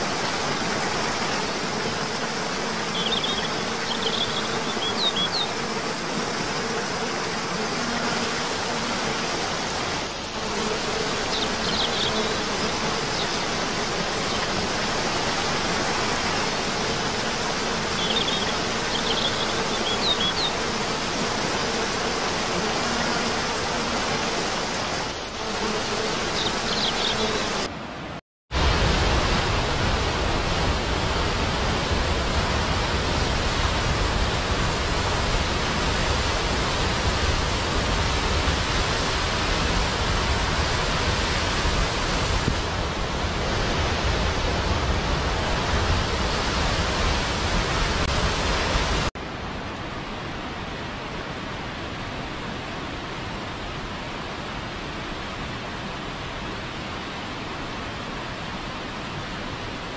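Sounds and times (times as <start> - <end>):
waterfall rushing: 8.2 - 25.4.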